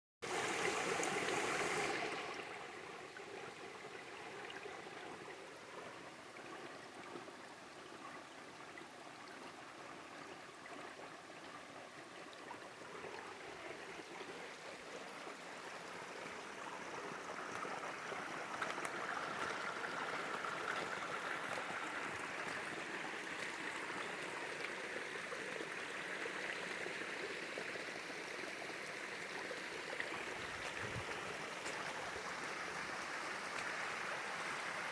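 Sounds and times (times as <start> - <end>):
waterfall flowing and splashing: 0.2 - 3.0, 29.9 - 34.9.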